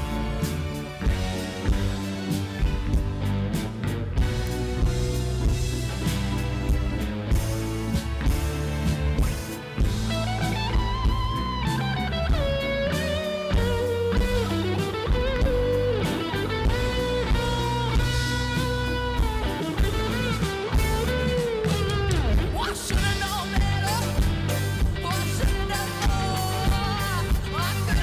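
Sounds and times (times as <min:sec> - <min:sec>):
bass guitar: 0:00.0 - 0:28.0
drums: 0:00.0 - 0:28.0
electric guitar melody: 0:00.0 - 0:28.0.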